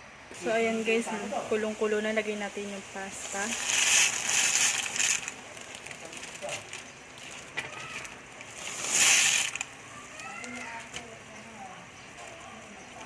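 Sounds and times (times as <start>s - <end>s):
boiling broth: 0.3s - 13.0s
dry pasta rattling into a pot: 3.2s - 9.7s.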